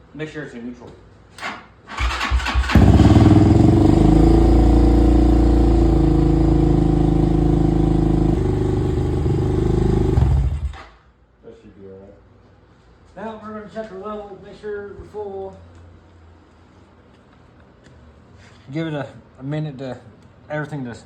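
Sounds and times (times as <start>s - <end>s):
dirt bike engine cranking: 1.4s - 4.7s, 8.3s - 10.9s
dirt bike engine idling: 2.6s - 10.8s.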